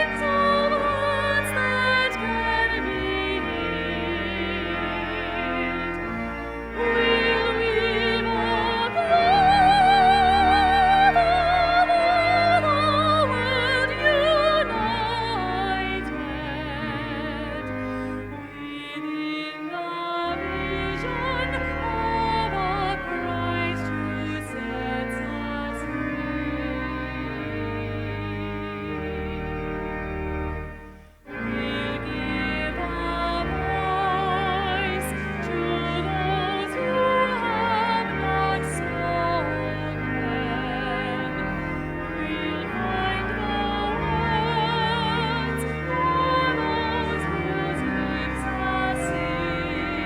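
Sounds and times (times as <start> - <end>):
classical solo singing with vibrato: 0.0 - 5.7, 6.6 - 26.0, 31.6 - 50.0
sustained organ accompaniment: 0.0 - 50.0.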